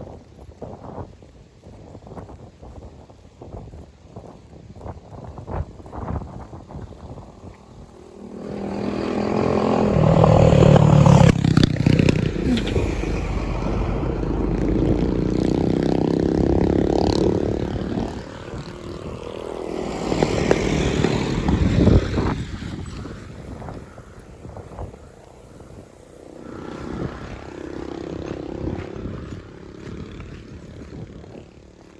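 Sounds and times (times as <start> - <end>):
motor vehicles passing by: 5.3 - 31.9.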